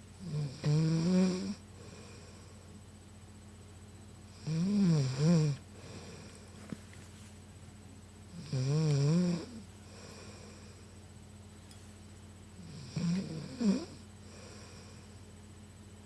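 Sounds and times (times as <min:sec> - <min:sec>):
woman snoring: 0:00.2 - 0:02.4, 0:04.4 - 0:06.4, 0:08.3 - 0:10.8, 0:12.6 - 0:15.1.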